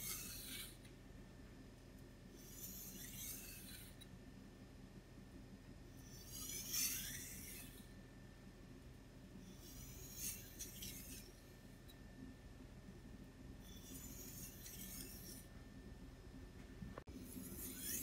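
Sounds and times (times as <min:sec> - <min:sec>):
knife on whetstone: 0:00.0 - 0:00.8, 0:02.4 - 0:04.0, 0:06.0 - 0:07.9, 0:09.5 - 0:11.5, 0:13.6 - 0:15.5, 0:17.2 - 0:18.0.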